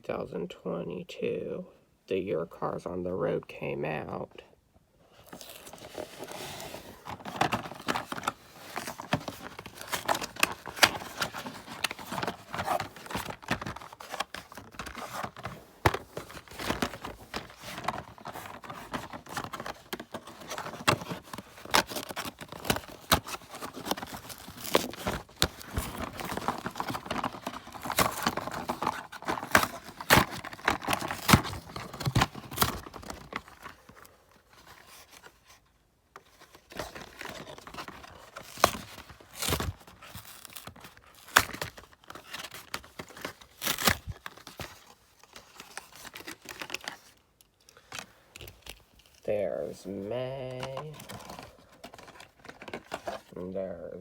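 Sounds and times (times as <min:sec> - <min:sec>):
rustling: 0:05.1 - 0:53.5
cardboard packaging tearing: 0:05.2 - 0:35.6, 0:36.3 - 0:47.2, 0:50.3 - 0:53.4.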